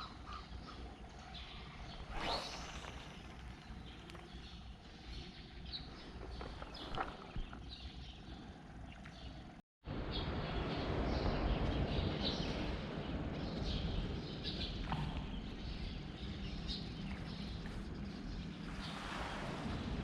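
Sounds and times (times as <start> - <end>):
wind: 0.0 - 20.0
sea noise: 1.8 - 4.4, 18.6 - 20.0.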